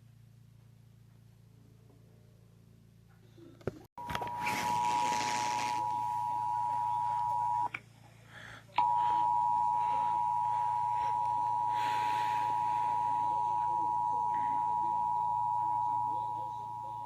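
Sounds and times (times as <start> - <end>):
two-tone alert signal: 4.0 - 7.7.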